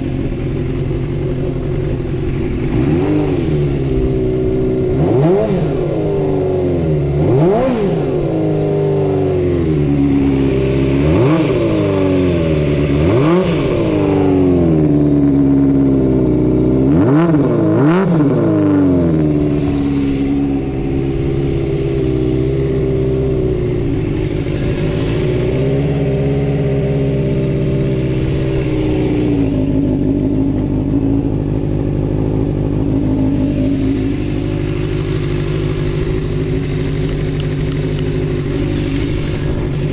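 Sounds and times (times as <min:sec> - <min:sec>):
motorcycle engine idling: 0:00.0 - 0:39.9
motorcycle engine revving: 0:00.0 - 0:39.9.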